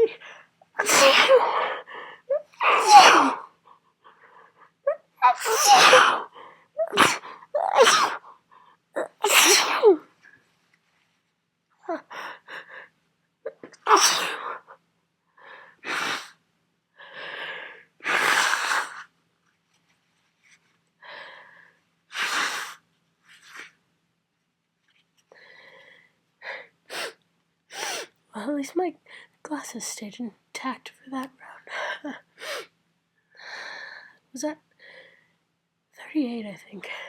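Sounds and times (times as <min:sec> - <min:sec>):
person sneezing: 0:00.8 - 0:01.7, 0:02.6 - 0:03.5, 0:05.2 - 0:08.3, 0:09.0 - 0:10.0, 0:13.6 - 0:14.6.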